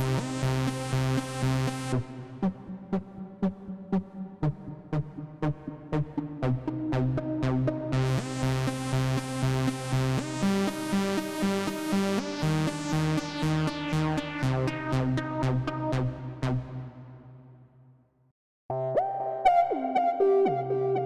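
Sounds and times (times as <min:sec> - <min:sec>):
acid bass synthesizer sequence: 0:00.0 - 0:17.0.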